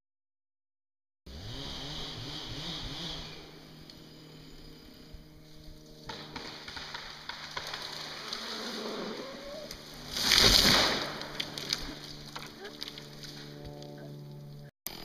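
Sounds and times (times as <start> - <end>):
sharp cracks and crackles: 6.0 - 9.0, 9.7 - 13.6
chainsaw idling: 11.1 - 15.0.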